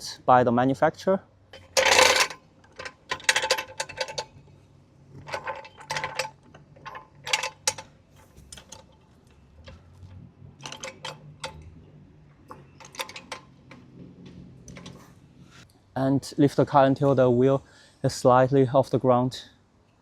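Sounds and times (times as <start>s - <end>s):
car jack clicking and clanking: 1.5s - 4.4s, 5.2s - 15.2s.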